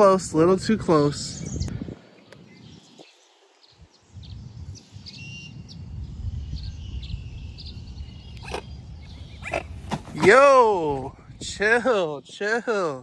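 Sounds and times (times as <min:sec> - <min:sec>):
birds chirping: 0:00.8 - 0:11.0.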